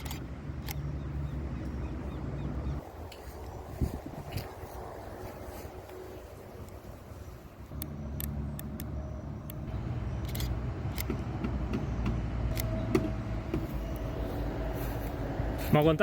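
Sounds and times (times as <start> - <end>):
car engine low rumble: 0.0 - 16.0
sharp clicks and ticks: 7.7 - 13.1.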